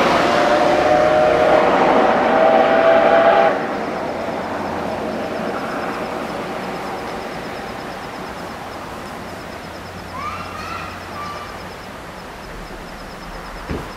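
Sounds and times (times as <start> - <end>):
steam locomotive whistle: 0.0 - 3.8
train running noise: 0.0 - 13.9.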